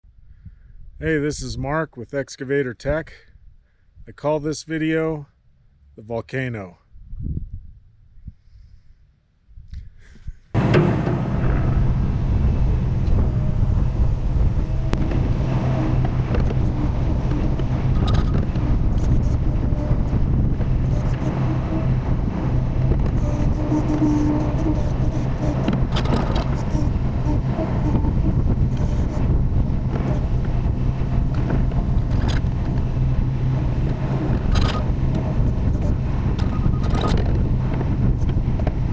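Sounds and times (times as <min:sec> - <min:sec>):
wind on microphone: 0:06.9 - 0:38.9
excavator diesel engine running: 0:10.6 - 0:38.9
short high-pitched machine noises: 0:20.8 - 0:29.4.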